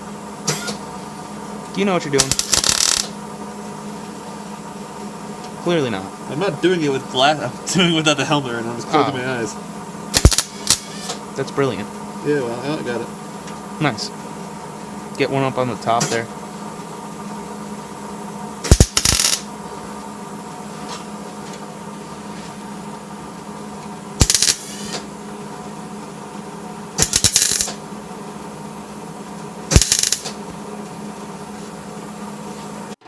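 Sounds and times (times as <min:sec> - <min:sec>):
steady low hum: 0:00.0 - 0:33.0
welding arc crackling: 0:02.1 - 0:03.2, 0:10.1 - 0:11.2, 0:18.6 - 0:19.5, 0:24.2 - 0:25.0, 0:27.0 - 0:27.8, 0:29.7 - 0:30.5.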